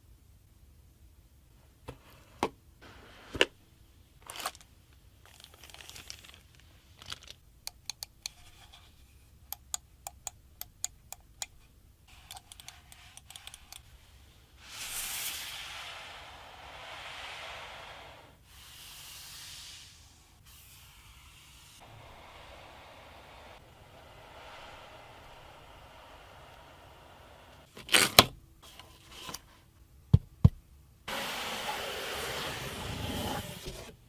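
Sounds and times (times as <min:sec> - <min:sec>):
packaging crinkling: 0:04.2 - 0:07.4
packaging rustling and tearing: 0:04.2 - 0:07.4.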